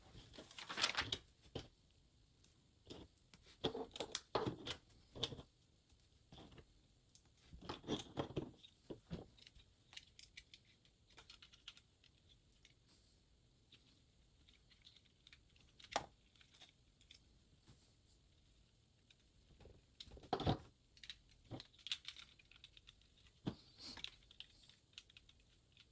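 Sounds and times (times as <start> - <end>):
plastic pieces clicking and rustling: 0.3 - 1.7, 2.8 - 5.5, 6.3 - 12.8, 13.7 - 17.2, 19.0 - 25.9.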